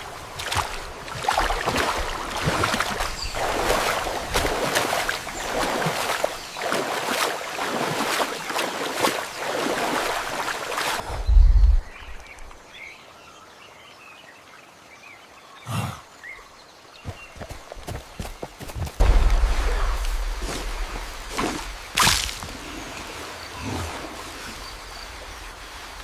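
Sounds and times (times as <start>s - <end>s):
floodwater rushing and splashing: 0.0s - 12.8s, 16.9s - 26.0s
deep thud: 19.0s - 21.8s.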